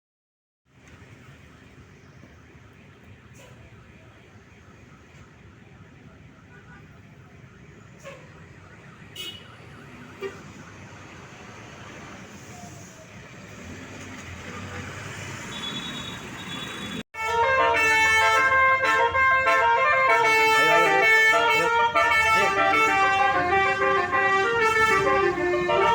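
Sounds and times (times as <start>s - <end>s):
road traffic noise: 0.6s - 25.9s
bus horn chiming melody: 17.2s - 25.9s.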